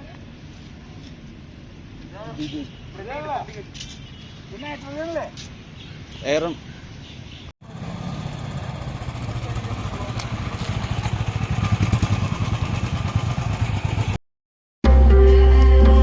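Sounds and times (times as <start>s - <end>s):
motorcycle engine running: 7.6s - 14.2s
music: 14.8s - 16.0s.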